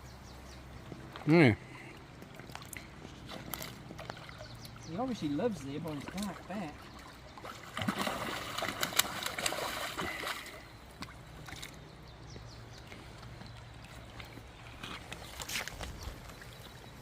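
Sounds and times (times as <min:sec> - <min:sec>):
river water trickling: 0:00.0 - 0:17.0
water splashing: 0:02.3 - 0:11.8.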